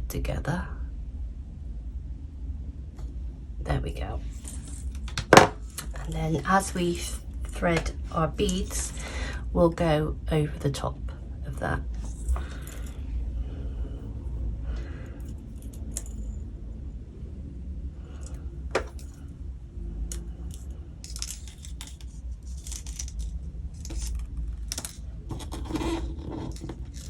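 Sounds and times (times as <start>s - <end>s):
low hum: 0.0s - 27.0s
plastic beads clicking and rattling: 20.5s - 27.0s.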